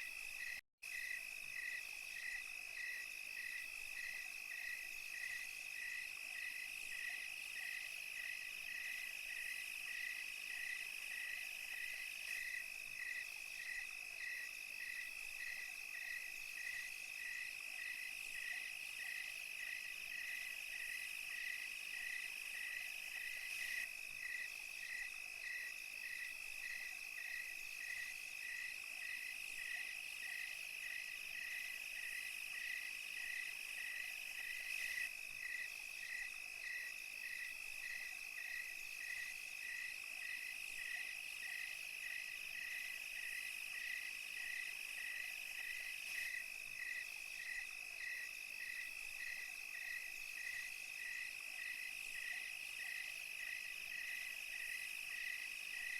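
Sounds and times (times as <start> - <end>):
insect chirp: 0.0 - 55.9
crickets trilling: 0.2 - 55.9.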